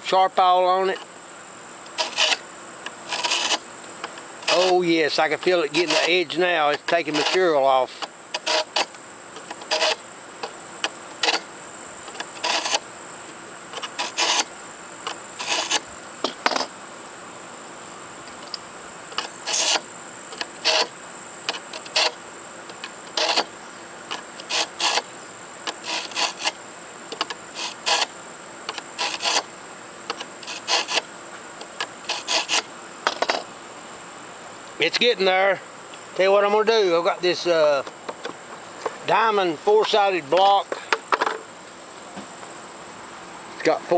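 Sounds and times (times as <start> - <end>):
sharpener scraping metal blade: 1.9 - 2.4, 3.1 - 3.6, 4.4 - 4.8, 5.7 - 7.5, 8.4 - 8.9, 9.6 - 10.0, 12.4 - 12.8, 13.8 - 14.5, 15.4 - 15.9, 19.2 - 20.9, 21.8 - 22.2, 23.1 - 23.5, 24.4 - 25.1, 25.7 - 26.6, 27.6 - 28.1, 29.0 - 29.5, 30.2 - 31.1, 32.0 - 32.7.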